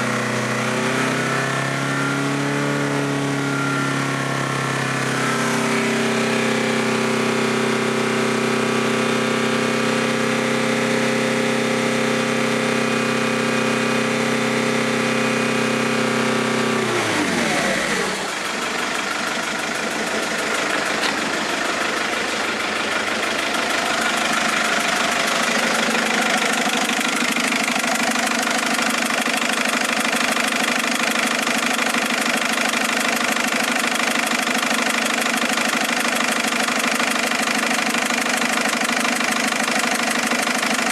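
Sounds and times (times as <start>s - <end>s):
car engine revving and idling: 0.0s - 40.9s
rough engine knocking: 17.0s - 40.9s.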